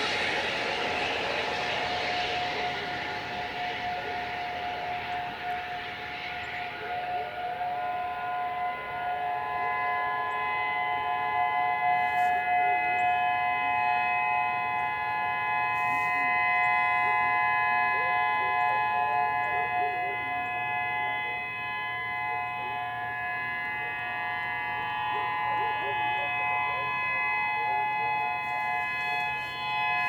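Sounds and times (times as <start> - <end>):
passing traffic hiss: 0.0 - 7.5
warning siren steady tone: 0.0 - 30.0.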